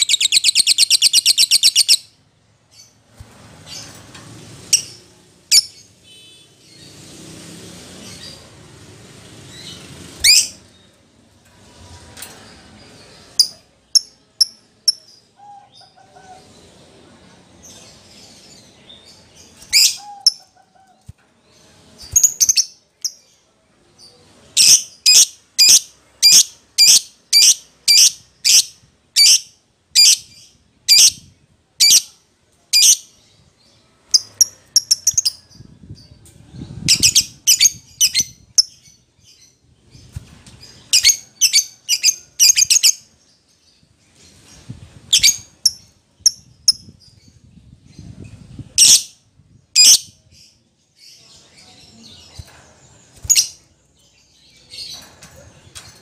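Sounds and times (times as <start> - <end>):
lovebird chirping: 0.0 - 3.0, 36.8 - 43.1.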